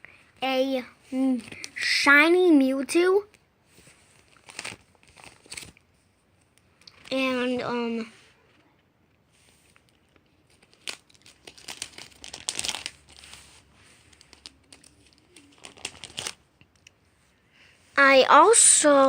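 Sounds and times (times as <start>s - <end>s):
trading cards crinkling: 1.3s - 2.0s, 3.9s - 7.6s, 9.6s - 17.0s.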